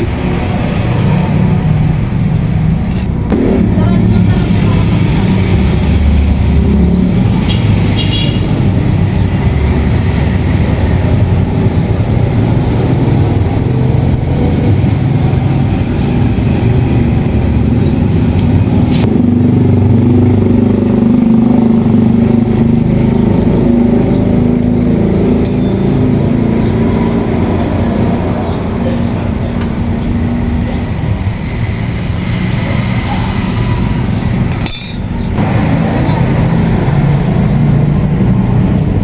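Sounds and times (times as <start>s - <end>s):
vehicle engine running: 0.0s - 39.0s
sharp click: 2.9s - 3.2s.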